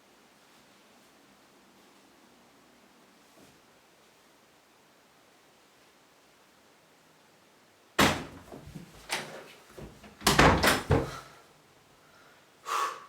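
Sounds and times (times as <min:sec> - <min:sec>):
door banging and rattling: 0:08.0 - 0:11.2.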